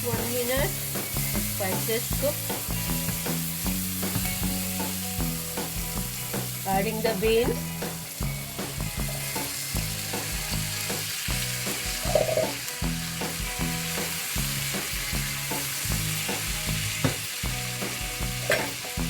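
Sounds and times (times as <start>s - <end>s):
beans sizzling in hot oil: 0.0s - 19.0s
soft background music: 0.0s - 19.0s.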